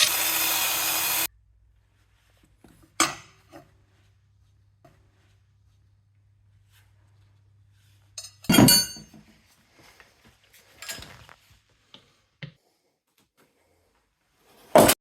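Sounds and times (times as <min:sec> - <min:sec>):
metal tools clanking: 0:08.2 - 0:09.2, 0:10.8 - 0:11.4.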